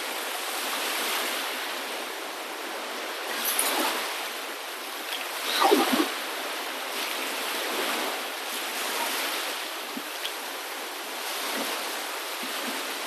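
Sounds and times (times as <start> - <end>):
waves washing on shore: 0.0 - 13.0.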